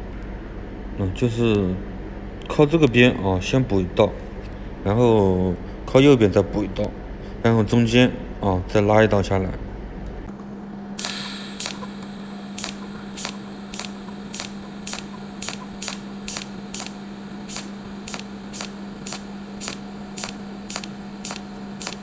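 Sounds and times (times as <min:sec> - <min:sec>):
steady electrical hum: 0:00.0 - 0:22.0
high-pitched whine: 0:10.6 - 0:22.0
welder ticking discharges: 0:11.0 - 0:22.0.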